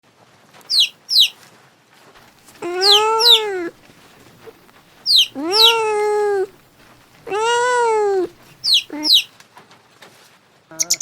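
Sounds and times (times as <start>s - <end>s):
animal long pitched calls: 0.7s - 1.3s, 2.6s - 3.7s, 5.1s - 6.5s, 7.3s - 9.3s
animal high chirps: 0.7s - 1.4s, 2.6s - 3.7s, 5.0s - 6.5s, 7.3s - 9.3s.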